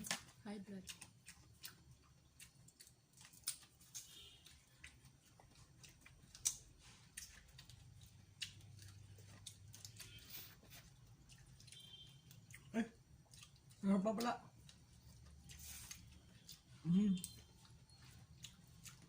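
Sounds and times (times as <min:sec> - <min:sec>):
seafood shells clicking and crackling: 0:00.9 - 0:05.2.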